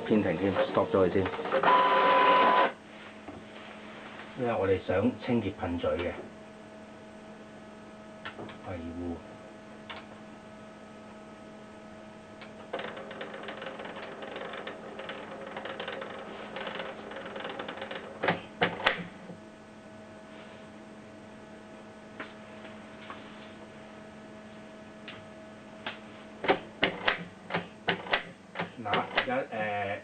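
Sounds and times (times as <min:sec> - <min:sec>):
steady electrical hum: 0:00.0 - 0:30.0
printer mechanism rattling and clicking: 0:12.6 - 0:19.1, 0:26.4 - 0:29.3.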